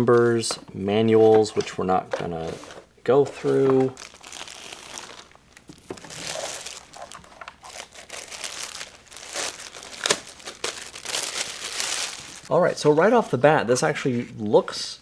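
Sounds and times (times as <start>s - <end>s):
packaging crinkling and rustling: 1.2s - 12.6s.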